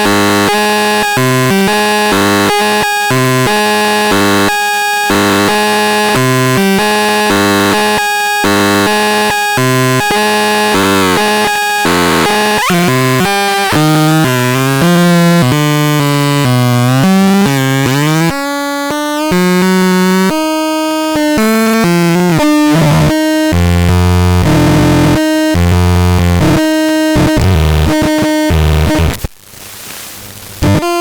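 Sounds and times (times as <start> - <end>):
buzzy electronic instrument notes: 0.0 - 29.2, 30.6 - 31.0.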